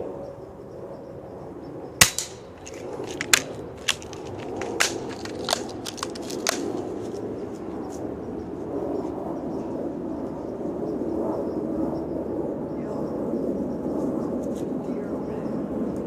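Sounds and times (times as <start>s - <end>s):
bb gun shot: 2.0s - 2.4s
sharp clicks and crunches: 2.0s - 7.3s.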